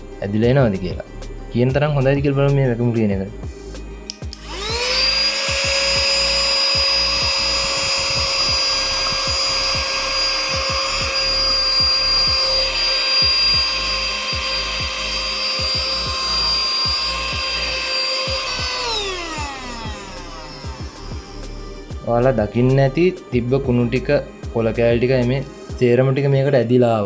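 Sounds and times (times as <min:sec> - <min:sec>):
handheld vacuum whining: 0:04.1 - 0:23.1.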